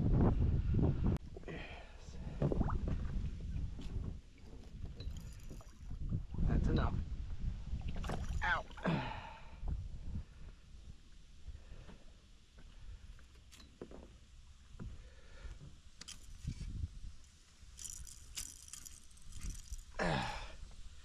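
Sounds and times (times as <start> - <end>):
fishing gear clinking and knocking: 4.5 - 5.9, 16.0 - 16.7, 17.7 - 20.0.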